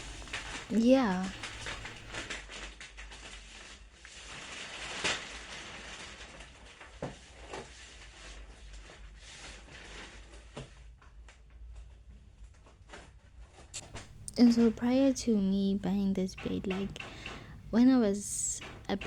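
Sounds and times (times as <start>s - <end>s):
sharp knocks and clicks: 13.8s - 19.0s.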